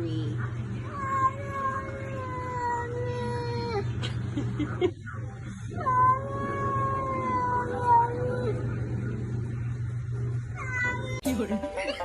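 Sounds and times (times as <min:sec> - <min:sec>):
cat yowling: 0:00.8 - 0:03.9, 0:05.7 - 0:08.8, 0:10.5 - 0:11.2.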